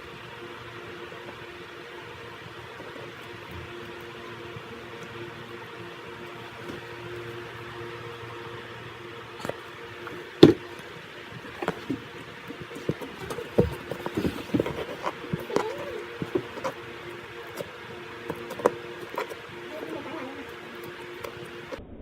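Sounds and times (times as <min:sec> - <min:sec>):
low hum: 0:00.0 - 0:22.0
slime squelching: 0:09.3 - 0:21.8.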